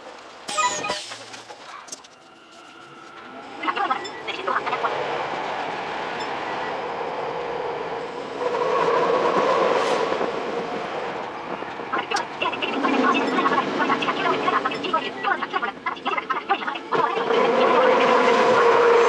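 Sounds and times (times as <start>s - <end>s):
electric train running: 2.3s - 19.0s
rail clatter: 8.2s - 19.0s.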